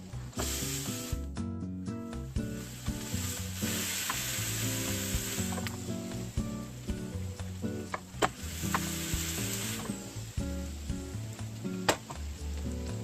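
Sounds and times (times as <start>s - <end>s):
background music: 0.0s - 13.0s
meat sizzling on a griddle: 0.3s - 1.2s, 2.4s - 13.0s.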